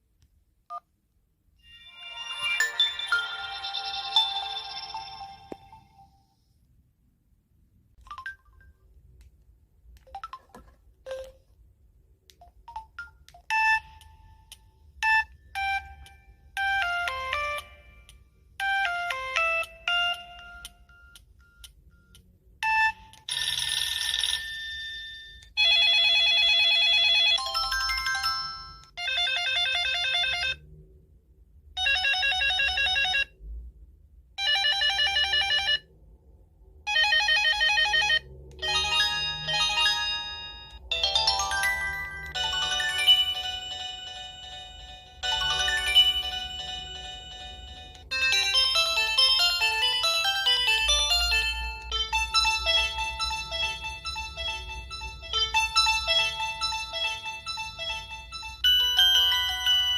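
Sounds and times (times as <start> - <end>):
phone ringing patterns: 1.6 - 6.2, 22.6 - 30.6, 36.9 - 59.9
electronic ringtone melody: 1.6 - 6.4, 12.7 - 30.6, 36.9 - 59.9.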